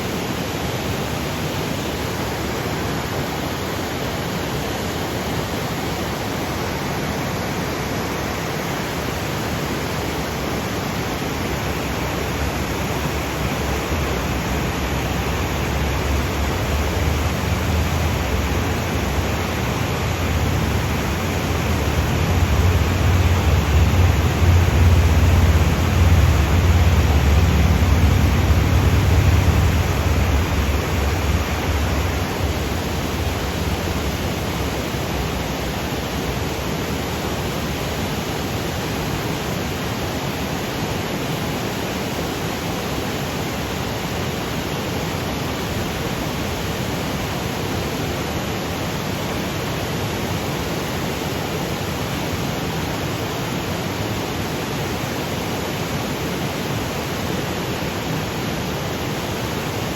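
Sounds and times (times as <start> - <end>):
waterfall rushing over rocks: 0.0 - 59.9
low rumble: 13.2 - 35.7.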